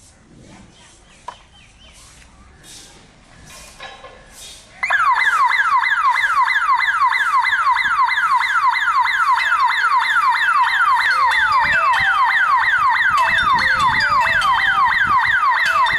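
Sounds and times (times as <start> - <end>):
electronic alarm siren wailing: 4.8 - 15.9.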